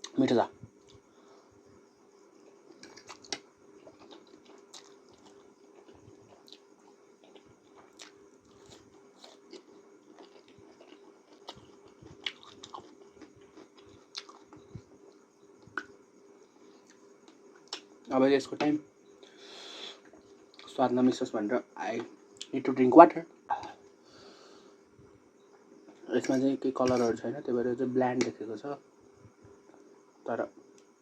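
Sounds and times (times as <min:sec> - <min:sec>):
faint steady hum: 0:00.0 - 0:31.0
person chewing noodles: 0:02.6 - 0:15.9.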